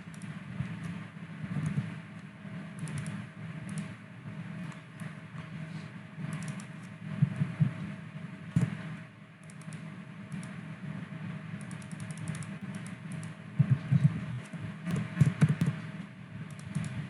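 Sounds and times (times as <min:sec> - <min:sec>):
computer humming: 0:00.0 - 0:17.0
keyboard and mouse clicks: 0:00.1 - 0:00.3, 0:02.8 - 0:03.9, 0:06.3 - 0:06.9, 0:09.4 - 0:10.6, 0:11.6 - 0:13.4, 0:14.4 - 0:15.8, 0:16.5 - 0:17.0.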